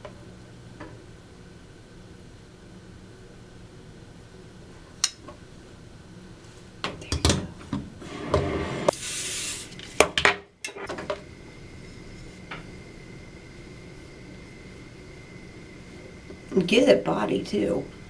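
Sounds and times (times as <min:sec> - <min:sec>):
spray bottle burst: 0:08.9 - 0:09.8.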